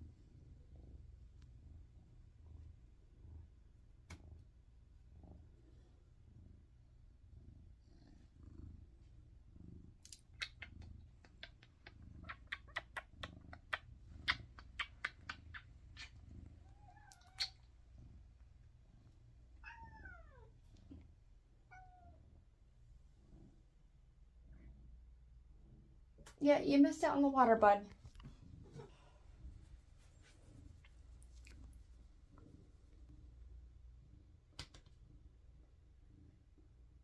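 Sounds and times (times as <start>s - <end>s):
cat purring: 0.0s - 26.4s, 27.0s - 37.0s
cat meowing: 16.7s - 17.6s, 19.6s - 20.5s.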